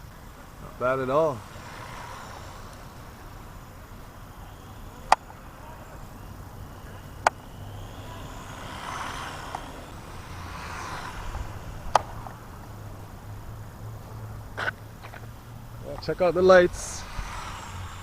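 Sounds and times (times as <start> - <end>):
rc car motor whirring: 0.0 - 18.0
sharp clicks: 7.2 - 7.4.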